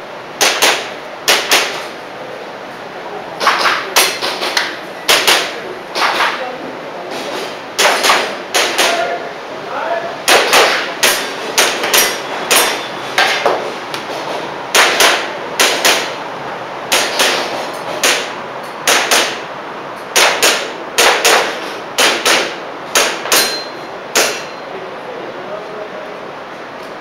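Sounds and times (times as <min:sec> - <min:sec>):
airsoft pistol shots: 0:00.4 - 0:01.9, 0:07.8 - 0:09.0, 0:10.3 - 0:13.4, 0:14.7 - 0:16.2, 0:16.9 - 0:19.4, 0:20.1 - 0:24.5.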